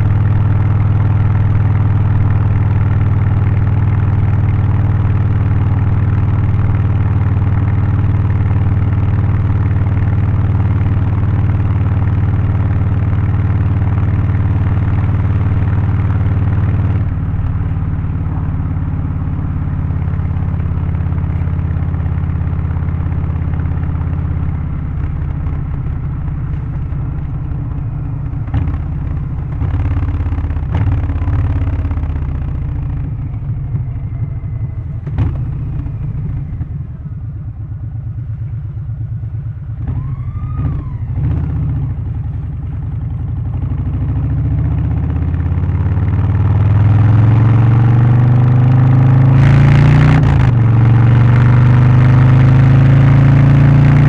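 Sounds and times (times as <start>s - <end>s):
motorcycle engine revving: 0.0s - 54.0s
rush of noise: 25.4s - 38.0s.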